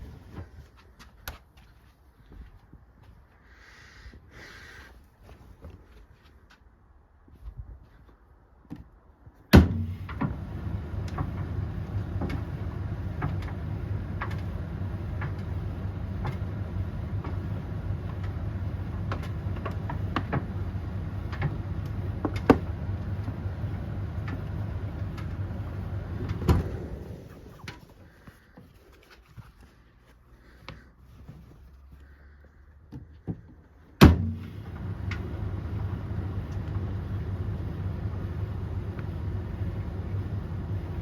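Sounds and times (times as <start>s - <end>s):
tumble dryer drum rumbling: 9.6s - 28.2s, 34.0s - 41.0s.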